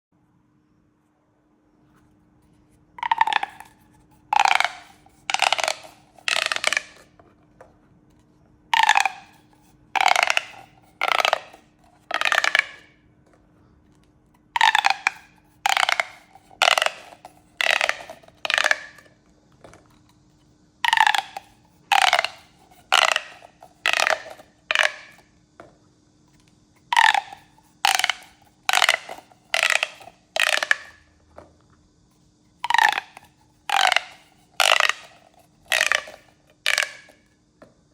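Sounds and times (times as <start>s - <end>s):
faint steady hum: 0.1s - 37.9s
plastic pop tubes popping: 3.0s - 7.2s, 8.7s - 13.0s, 14.5s - 20.1s, 20.8s - 25.7s, 26.8s - 31.5s, 32.6s - 37.3s.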